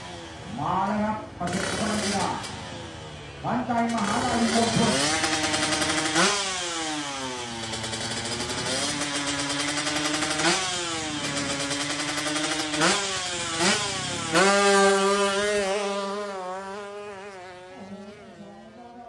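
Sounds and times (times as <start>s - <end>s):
motorcycle engine throttle blips: 0.8s - 2.9s, 3.9s - 6.4s.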